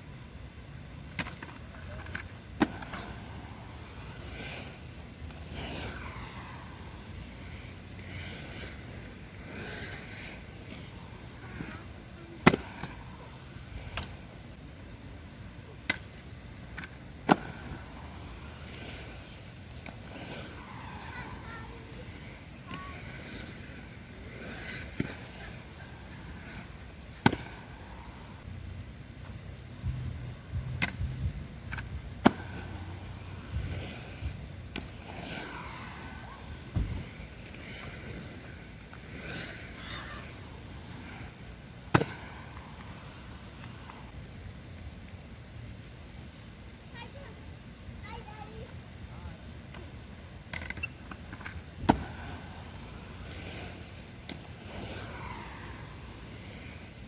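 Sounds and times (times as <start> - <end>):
skate wheels rolling on pavement: 0.0 - 57.0
low steady rumble: 25.3 - 37.7
dull thump: 36.7 - 37.0.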